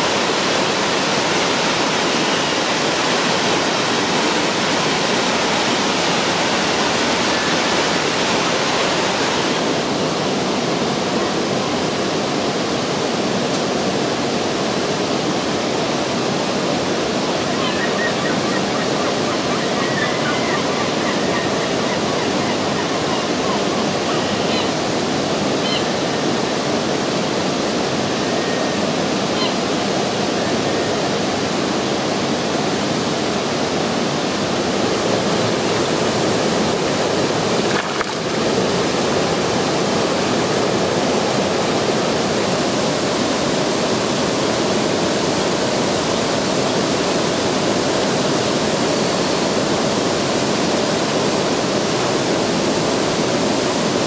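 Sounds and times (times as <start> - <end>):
water rushing over a dam: 0.0 - 54.0
faint high bird calls: 25.6 - 25.9, 28.4 - 29.6.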